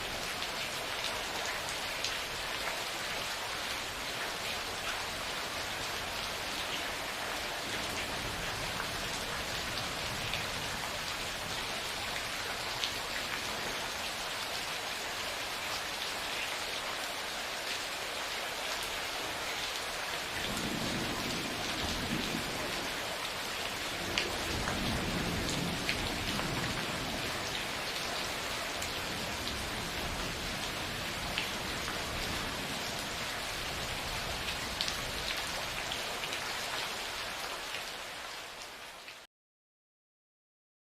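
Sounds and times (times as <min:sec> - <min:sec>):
steady rain: 0:00.0 - 0:39.3
thunder rumbling: 0:20.4 - 0:22.9, 0:24.0 - 0:27.4.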